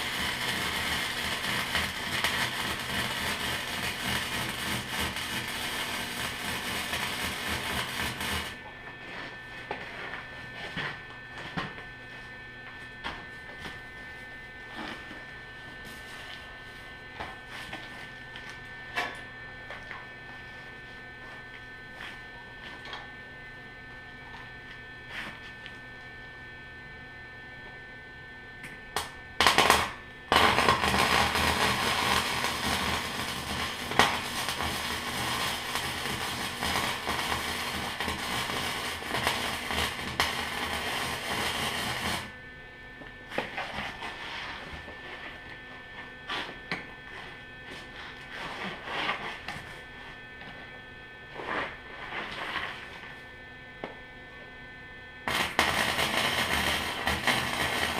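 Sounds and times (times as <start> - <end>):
welding arc crackling: 0.0 - 8.7, 29.0 - 42.4, 55.2 - 57.9
welder humming: 0.0 - 27.9, 28.6 - 57.9.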